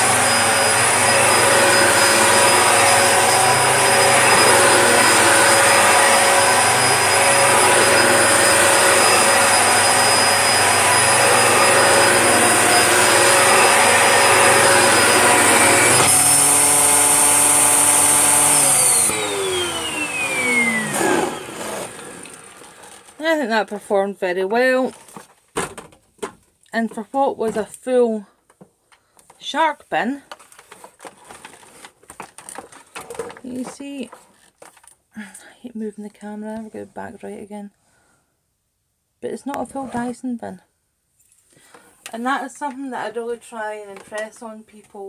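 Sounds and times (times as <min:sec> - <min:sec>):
vacuum motor whine spinning down: 0:00.0 - 0:23.1
upright vacuum cleaner running: 0:00.0 - 0:23.4.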